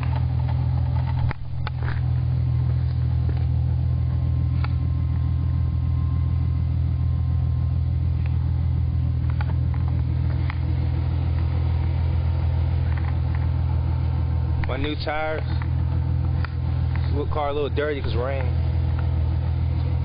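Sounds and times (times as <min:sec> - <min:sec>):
car engine idling: 0:00.0 - 0:20.0.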